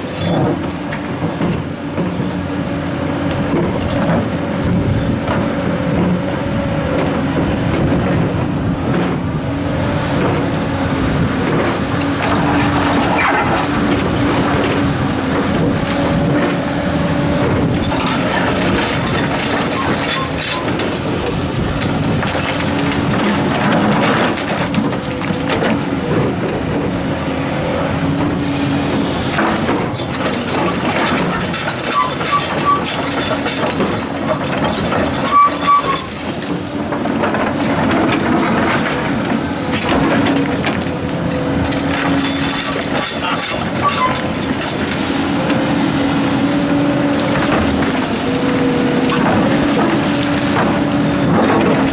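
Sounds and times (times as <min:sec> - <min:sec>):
excavator diesel engine running: 0:00.0 - 0:51.9
rocks grinding and knocking: 0:28.2 - 0:51.9.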